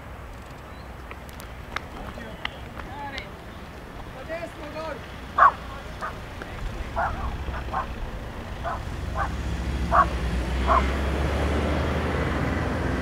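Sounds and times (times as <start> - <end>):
vehicle engine rumble: 0.0 - 13.0
small dog yipping: 8.6 - 10.9.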